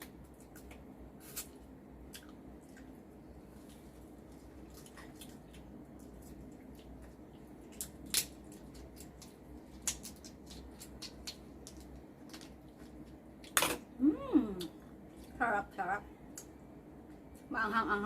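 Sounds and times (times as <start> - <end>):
person humming mmm: 14.0 - 14.8.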